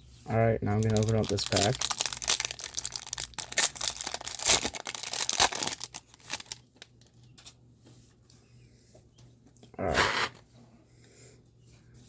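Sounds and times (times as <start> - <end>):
foil wrapper tearing and crinkling: 0.7 - 6.7.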